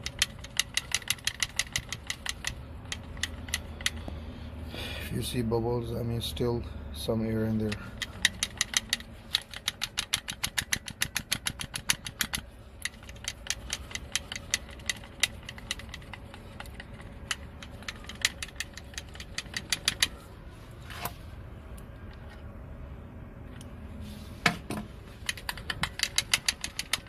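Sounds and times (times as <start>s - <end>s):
hand fuel pump clicking: 0.0s - 4.1s, 7.5s - 20.2s, 25.2s - 27.0s.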